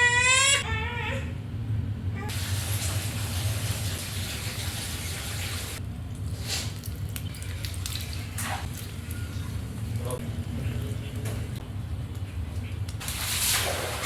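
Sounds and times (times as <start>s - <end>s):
tap water running: 2.3s - 5.8s.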